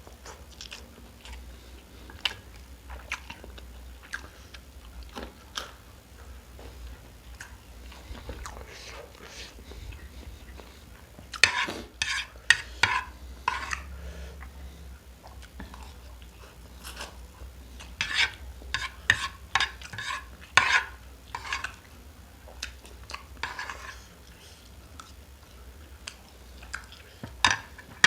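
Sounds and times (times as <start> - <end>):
cutlery scraping through noodles: 11.4 - 13.9, 18.0 - 21.8, 23.4 - 24.1.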